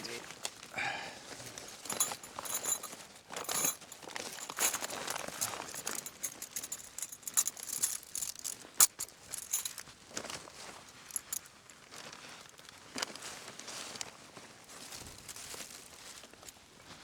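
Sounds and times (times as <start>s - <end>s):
metallic clinks and jangles: 1.6s - 9.8s, 11.0s - 11.5s
gear rustling: 1.6s - 9.9s, 11.0s - 11.5s.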